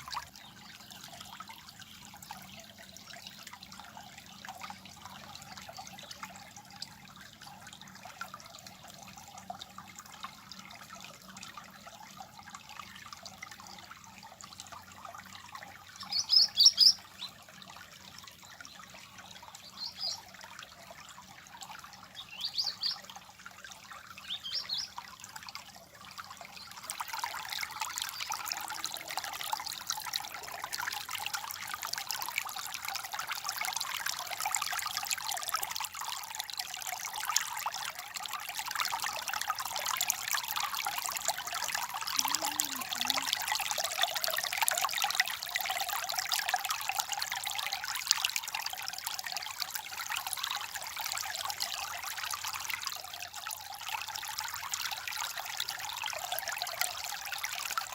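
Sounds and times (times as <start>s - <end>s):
water trickling and babbling: 0.0s - 57.9s
bird chirps: 16.0s - 17.0s.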